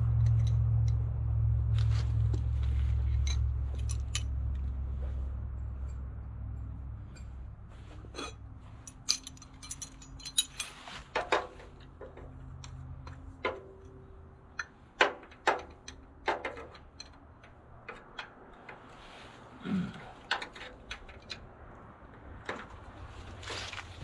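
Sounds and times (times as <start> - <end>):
metal tools clinking and clanking: 0.0 - 1.0, 1.8 - 5.2, 5.8 - 19.0, 20.0 - 21.5
low hum: 0.0 - 10.8.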